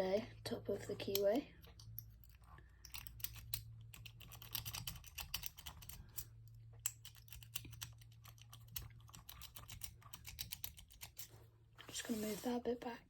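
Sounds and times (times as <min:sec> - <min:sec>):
lock pick clicking and scraping: 0:01.0 - 0:11.3.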